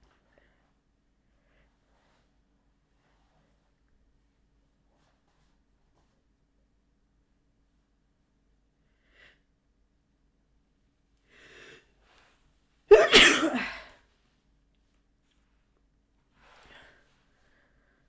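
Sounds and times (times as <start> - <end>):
woman sneezing: 12.9 - 13.9.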